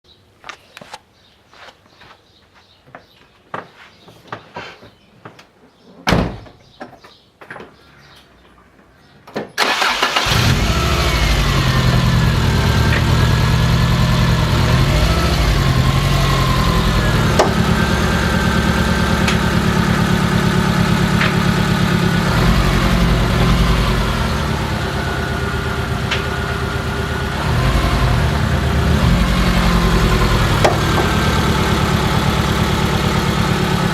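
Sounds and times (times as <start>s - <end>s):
car engine starting and running: 9.6s - 33.9s.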